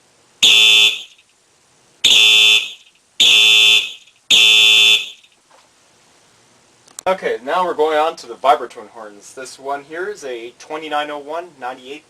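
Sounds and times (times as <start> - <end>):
fire alarm horn blasts: 0.4 - 1.2, 2.0 - 5.3.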